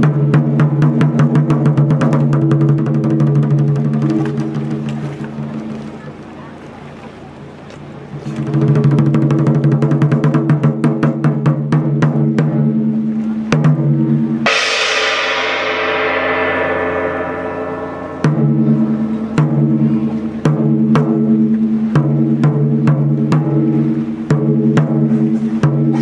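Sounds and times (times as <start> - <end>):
taiko drums: 0.0 - 5.9, 8.3 - 26.0
sustained low tone: 14.2 - 21.8
metallic crash: 14.4 - 20.9.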